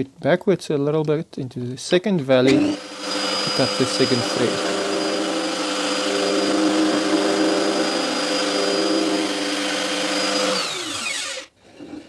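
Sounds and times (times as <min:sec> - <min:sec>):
router whining: 0:02.4 - 0:12.0.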